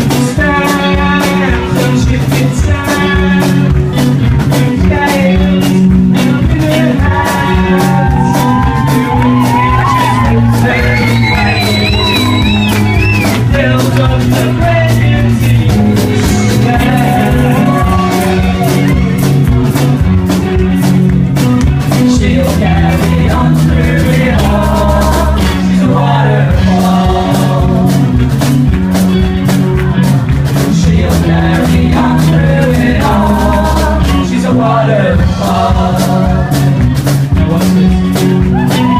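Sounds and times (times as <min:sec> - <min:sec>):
person singing: 0:00.0 - 0:19.8, 0:21.8 - 0:28.4, 0:29.8 - 0:38.9
band with bass and drums: 0:00.0 - 0:38.9.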